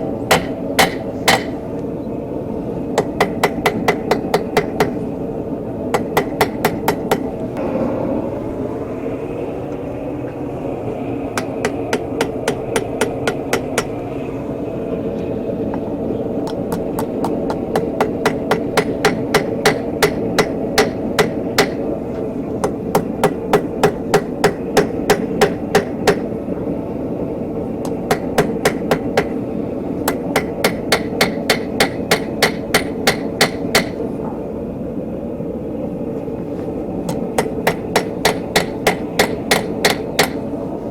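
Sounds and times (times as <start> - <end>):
hammer striking steel on anvil: 0.3 - 1.6, 3.0 - 5.0, 16.7 - 21.8, 27.8 - 29.4, 30.1 - 34.0, 37.1 - 40.4.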